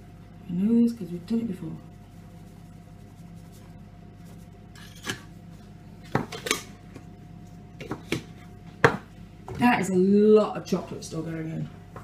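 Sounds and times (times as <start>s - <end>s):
spoon scraping a bowl: 4.7s - 5.3s.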